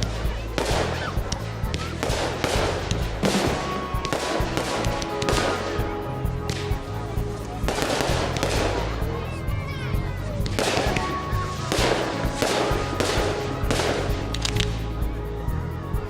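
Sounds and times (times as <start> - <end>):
fireworks bursting and crackling: 0.0 - 16.0
music: 0.0 - 16.0.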